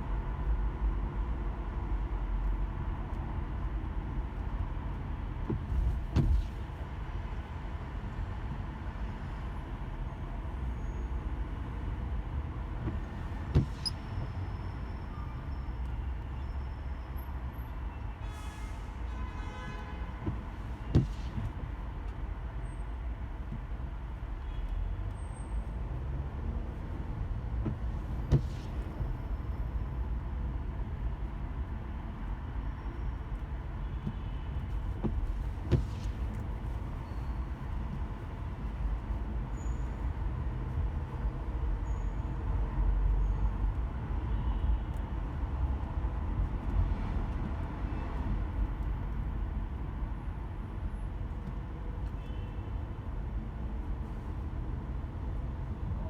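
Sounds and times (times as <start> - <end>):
surrounding traffic noise: 0.0 - 56.0
car driving rumble: 0.4 - 10.8, 11.5 - 18.2, 19.9 - 43.8
vehicle horn: 18.2 - 21.0.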